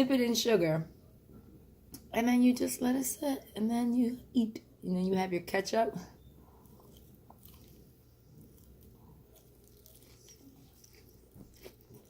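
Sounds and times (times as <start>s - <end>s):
faint chewing: 6.2s - 12.0s.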